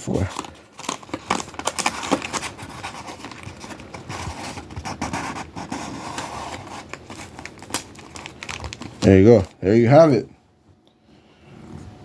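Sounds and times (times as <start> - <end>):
wrapping and box rustling: 0.0 - 9.6.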